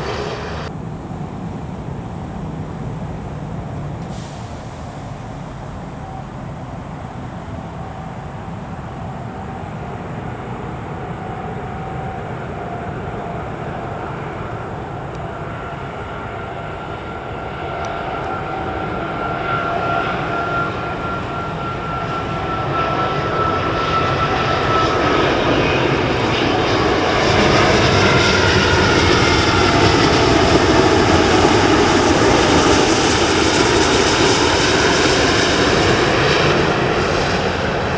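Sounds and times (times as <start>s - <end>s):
jet engines roaring: 0.0s - 37.9s
whining engine tones: 0.0s - 37.9s.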